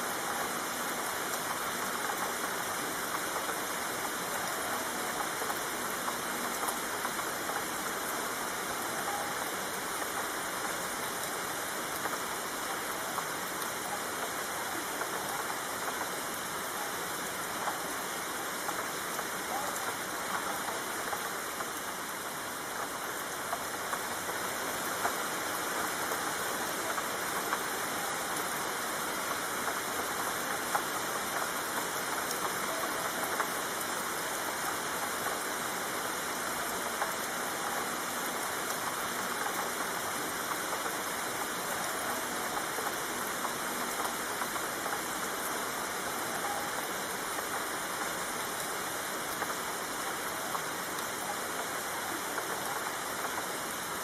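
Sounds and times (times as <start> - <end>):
steady rain hiss: 0.0 - 54.0
raindrop ticks: 0.1 - 54.0.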